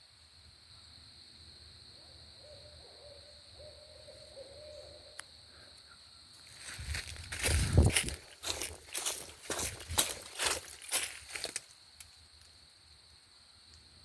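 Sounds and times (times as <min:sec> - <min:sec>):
owl calling: 0:02.4 - 0:05.3.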